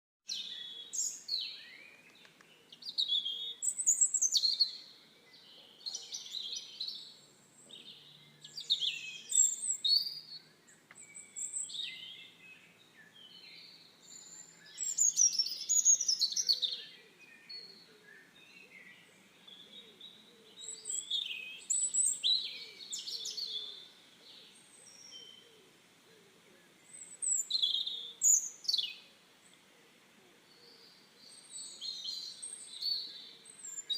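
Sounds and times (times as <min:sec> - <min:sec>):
birds chirping and whistling: 0:02.9 - 0:04.9, 0:06.0 - 0:10.4, 0:11.0 - 0:17.8, 0:18.4 - 0:23.8, 0:26.9 - 0:29.0, 0:30.7 - 0:33.9.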